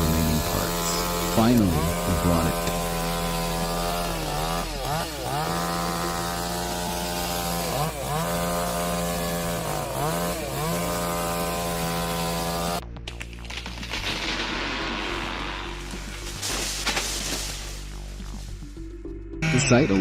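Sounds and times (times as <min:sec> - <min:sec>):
chainsaw engine revving: 0:00.0 - 0:12.8.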